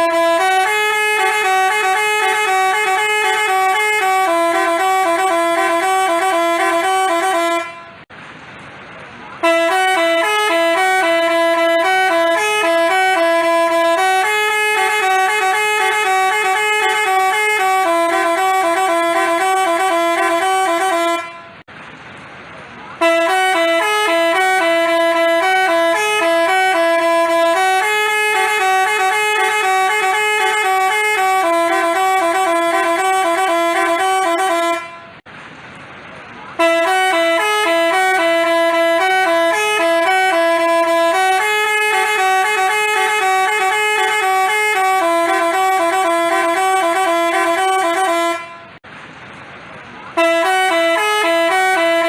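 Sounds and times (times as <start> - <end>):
musical horn playing a tune: 0.0 - 8.0, 9.4 - 21.6, 23.0 - 35.2, 36.6 - 48.8, 50.2 - 52.0.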